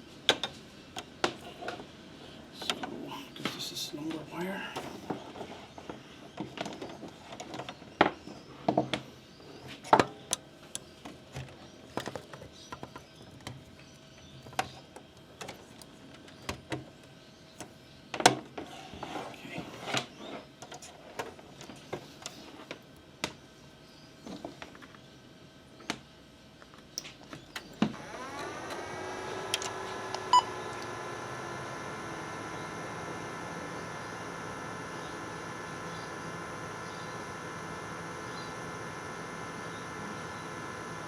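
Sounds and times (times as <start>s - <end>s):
computer fan hum: 0.8s - 5.6s, 26.7s - 41.0s
wires and connectors clicking: 28.2s - 41.0s.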